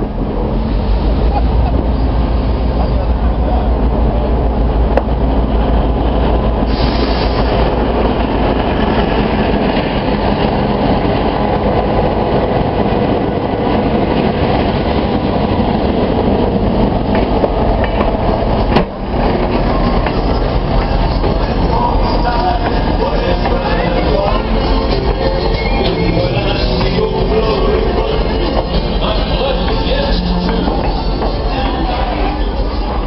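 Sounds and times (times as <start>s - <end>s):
train wheels rumbling on rails: 0.0s - 33.0s.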